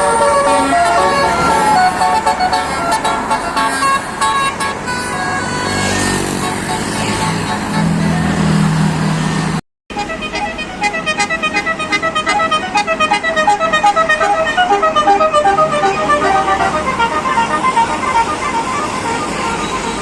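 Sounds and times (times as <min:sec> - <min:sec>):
multi-tone air horn melody: 0:00.0 - 0:08.4, 0:09.9 - 0:20.0.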